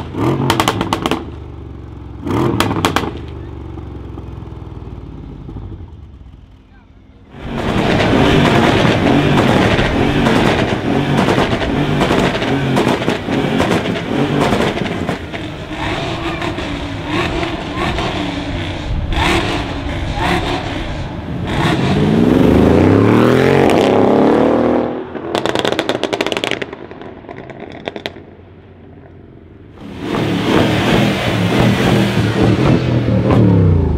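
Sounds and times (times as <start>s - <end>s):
exhaust crackles and bangs: 0.0s - 1.4s, 2.5s - 3.4s, 7.4s - 22.0s, 25.2s - 28.3s
car engine accelerating hard: 7.3s - 26.8s, 29.8s - 33.9s.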